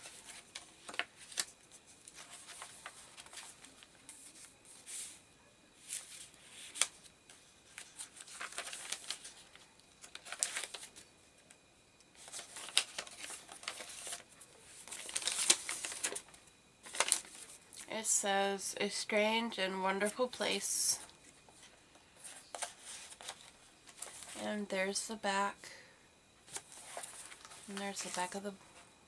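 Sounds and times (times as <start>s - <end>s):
paper rustling and crinkling: 0.0s - 5.2s, 5.8s - 18.0s, 21.2s - 24.5s, 26.4s - 28.8s.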